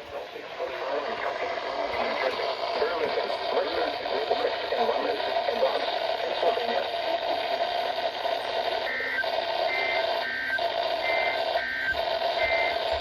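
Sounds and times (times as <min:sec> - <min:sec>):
radio static: 0:00.0 - 0:13.0
beeping digital bursts: 0:08.6 - 0:13.0.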